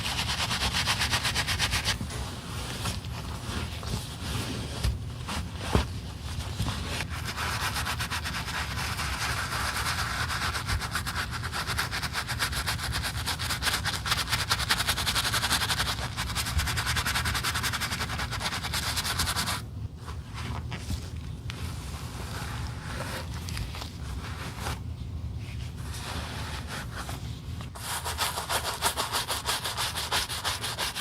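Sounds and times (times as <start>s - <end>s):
quiet handling sounds: 19.8s - 27.8s
scraping strokes on a shoe: 25.7s - 31.0s.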